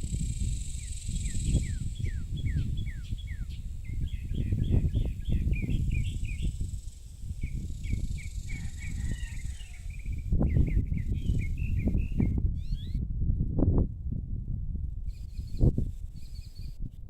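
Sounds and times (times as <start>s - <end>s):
low rumbling noise: 0.0s - 8.6s
birds chirping: 0.0s - 12.9s
faint high insect hum: 0.0s - 12.9s.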